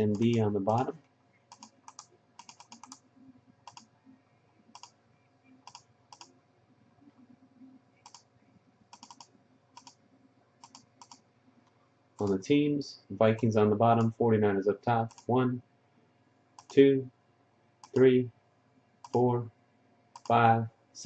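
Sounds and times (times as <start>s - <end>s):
faint keyboard typing: 0.0s - 6.4s, 7.0s - 12.5s, 13.2s - 14.2s, 14.9s - 15.5s, 16.5s - 16.9s, 17.8s - 18.2s, 19.0s - 19.4s, 20.1s - 20.5s.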